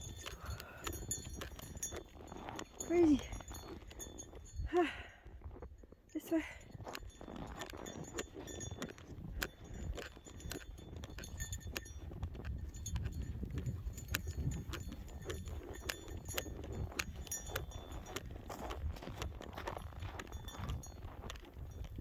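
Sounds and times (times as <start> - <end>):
footsteps crunching in snow: 0.0 - 4.6, 6.5 - 22.0
wind buffeting microphone: 6.7 - 22.0.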